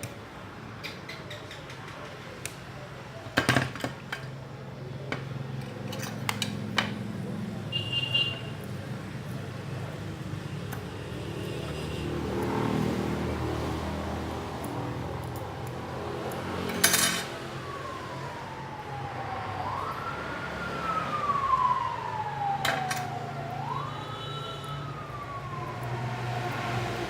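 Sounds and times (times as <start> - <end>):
siren wailing: 12.1 - 27.0.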